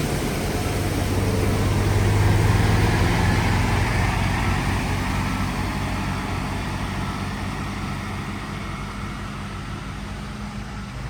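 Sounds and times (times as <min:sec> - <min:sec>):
water spray rushing: 0:00.0 - 0:03.6
vehicle engine: 0:00.0 - 0:11.0.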